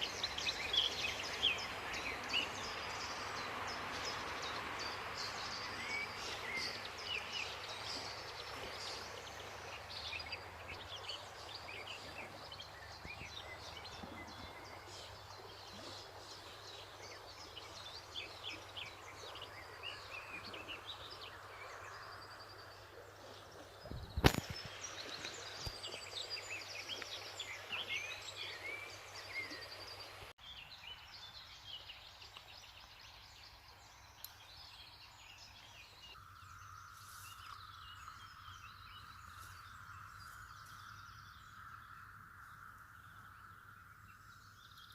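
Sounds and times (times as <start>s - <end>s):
stream water rushing: 0.0s - 22.0s
small birds chirping and trilling: 0.0s - 44.9s.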